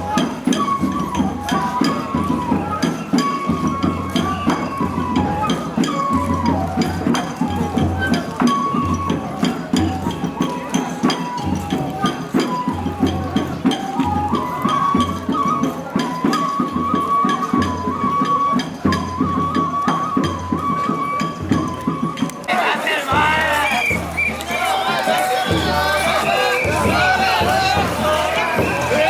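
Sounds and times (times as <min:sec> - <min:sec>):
bamboo flute melody: 0:00.0 - 0:29.0
deep drum beats: 0:21.9 - 0:29.0
sharp percussion strikes: 0:22.3 - 0:29.0.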